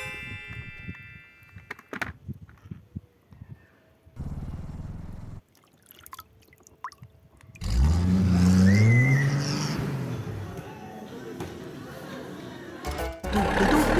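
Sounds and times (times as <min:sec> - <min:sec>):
car engine revving: 0:04.2 - 0:05.4, 0:07.6 - 0:10.6.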